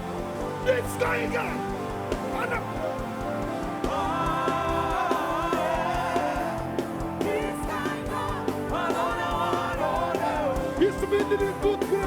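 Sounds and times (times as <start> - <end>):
band with steady drum beat: 3.6 - 12.0.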